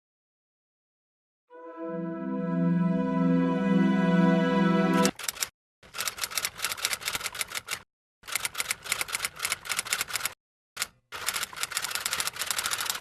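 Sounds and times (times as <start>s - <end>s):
rapid sharp clicks: 5.0s - 13.0s.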